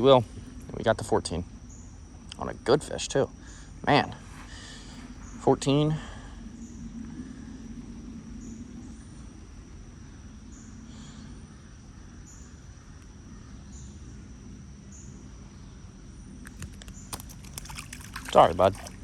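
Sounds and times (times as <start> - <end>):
insects whining: 0.0 - 19.0.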